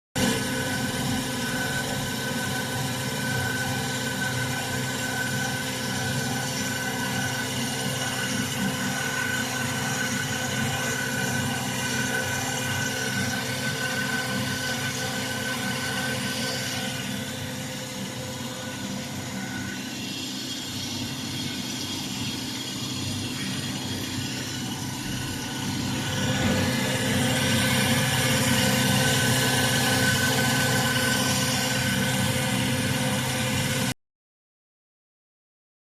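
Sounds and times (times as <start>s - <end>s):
wire saw motor hum: 0.2s - 34.0s
wire saw hissing and whining: 13.8s - 33.5s.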